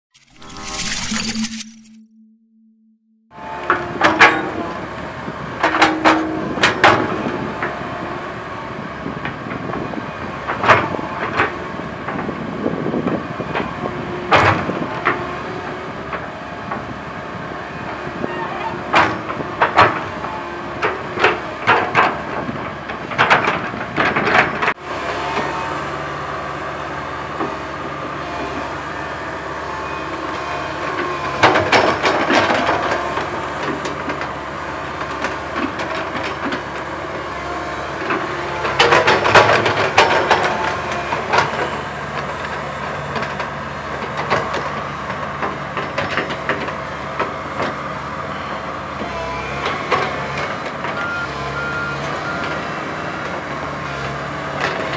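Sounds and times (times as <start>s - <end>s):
metallic clatter and squealing: 0.1s - 2.0s
excavator diesel engine running: 3.4s - 54.9s.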